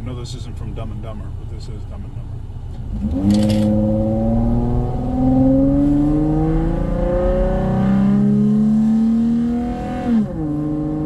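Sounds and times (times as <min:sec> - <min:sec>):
car engine accelerating hard: 0:02.7 - 0:11.0.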